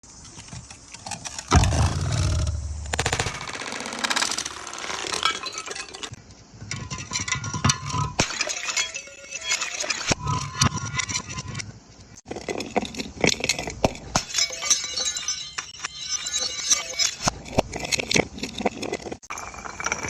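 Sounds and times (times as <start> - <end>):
glass bottles smashing: 5.0 - 6.2, 6.8 - 11.5, 13.9 - 17.9
glass shards clinking: 5.0 - 11.6, 12.4 - 19.0.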